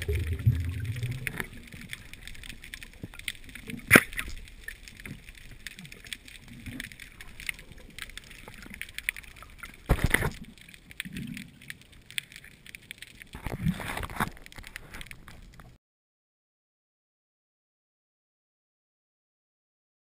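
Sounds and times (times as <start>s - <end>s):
water rushing burst: 0.0s - 2.4s
underwater crackle of clicks: 0.0s - 15.8s
water gurgling: 0.0s - 15.8s.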